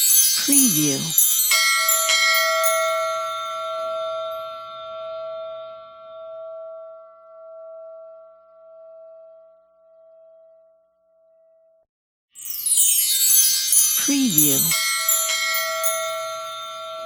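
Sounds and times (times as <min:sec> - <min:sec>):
bell-like chime ringing: 0:00.0 - 0:06.7, 0:12.4 - 0:17.0.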